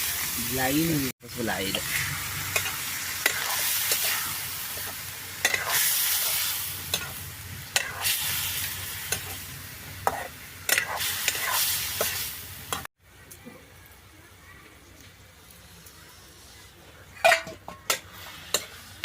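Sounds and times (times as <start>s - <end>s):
food sizzling in a pan: 0.0s - 19.0s
spatula scraping a pan: 1.7s - 9.4s, 10.0s - 12.2s, 17.2s - 19.0s.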